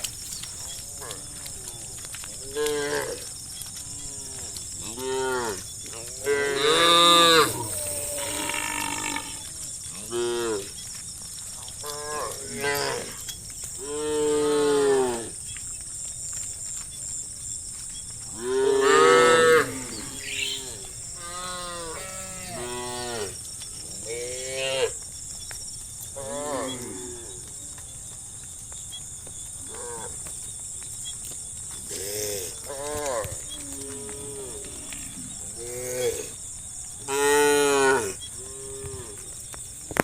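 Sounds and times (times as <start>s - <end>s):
steady high-pitched hiss: 0.0s - 40.0s
cows mooing: 18.4s - 23.4s.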